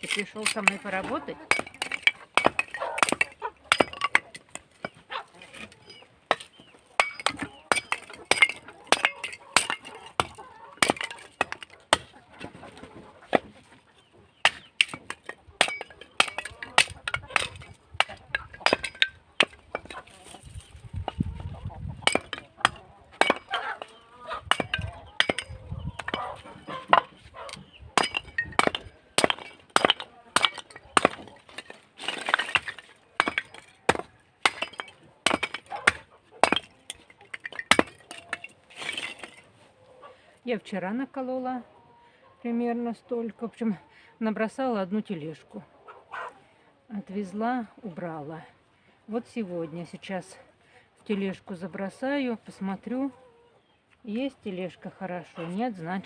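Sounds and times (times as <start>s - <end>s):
axe splitting wood: 0.0s - 12.6s, 13.3s - 13.6s, 14.4s - 39.5s.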